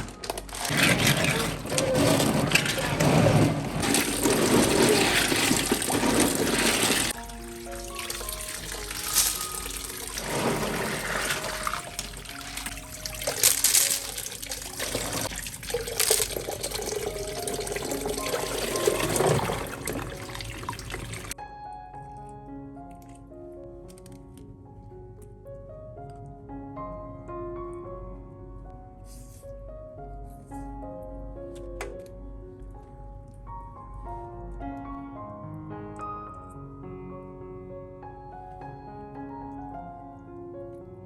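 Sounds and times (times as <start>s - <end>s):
water running into sink: 0.0s - 21.4s
soft piano music: 0.0s - 41.0s.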